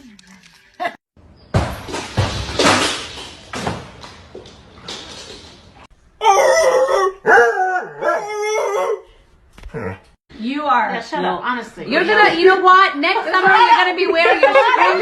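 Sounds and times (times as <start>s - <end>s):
dog howling: 6.2s - 9.0s.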